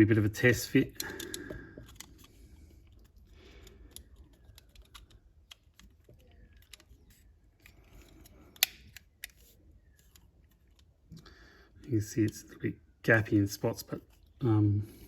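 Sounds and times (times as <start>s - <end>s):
plastic parts clicking: 0.8s - 12.5s.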